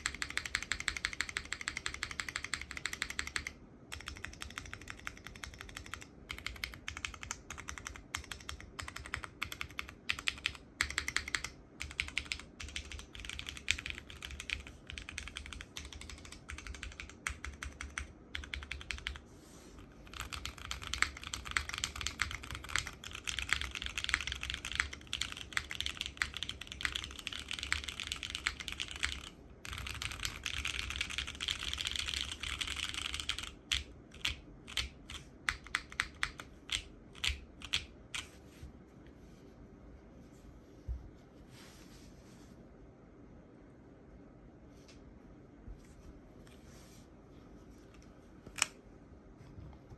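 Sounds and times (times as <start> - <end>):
mechanical keyboard typing: 0.0 - 38.3.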